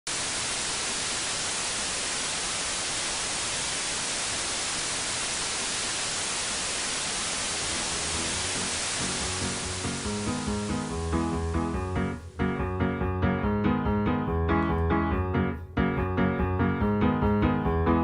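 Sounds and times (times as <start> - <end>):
white noise hiss: 0.1 - 13.2
low music notes: 7.7 - 18.0.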